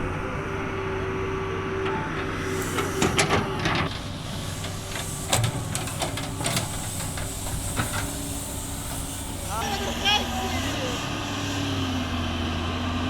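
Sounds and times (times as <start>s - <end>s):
excavator diesel engine with hiss: 0.2s - 13.0s.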